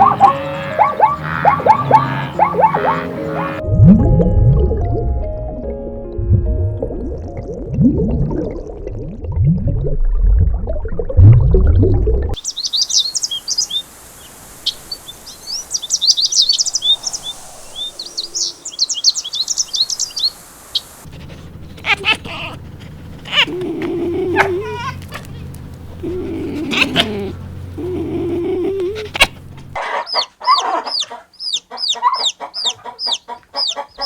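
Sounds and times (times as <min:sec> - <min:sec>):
small birds chirping: 0:12.4 - 0:34.0
low gliding sounds: 0:16.6 - 0:19.0.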